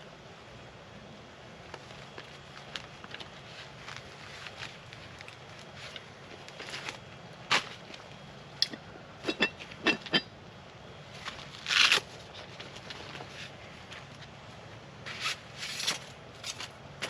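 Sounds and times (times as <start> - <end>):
soft rustling scrapes: 1.8 - 8.1.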